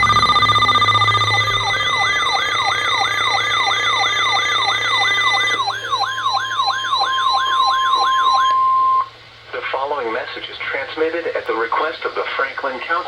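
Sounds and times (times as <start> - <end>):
steady alert tone: 0.0 - 9.0
electronic siren sweeping: 0.0 - 9.1.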